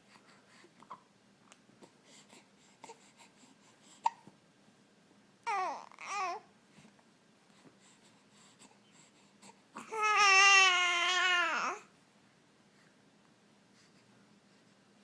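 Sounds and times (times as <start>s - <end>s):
child whining cry: 5.5s - 6.5s, 9.8s - 11.9s.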